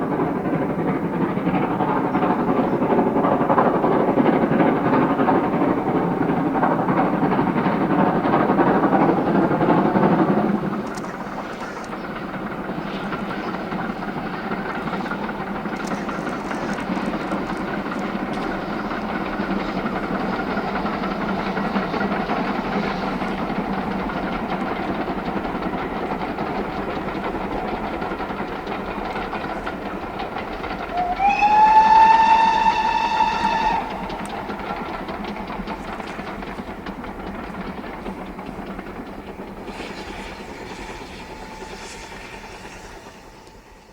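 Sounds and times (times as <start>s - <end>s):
steam locomotive running: 0.0s - 43.9s
steam whistle: 30.8s - 34.3s.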